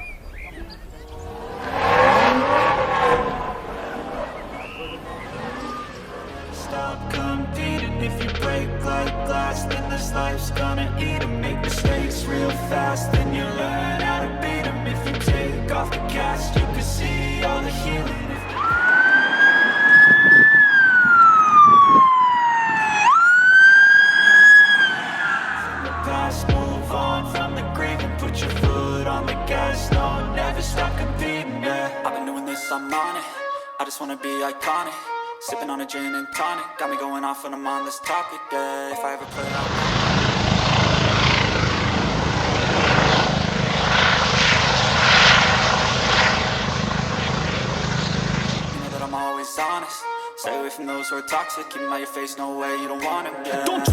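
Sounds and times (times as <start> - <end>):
siren wailing: 0.1 - 53.9
propeller aircraft engine droning: 39.3 - 49.1.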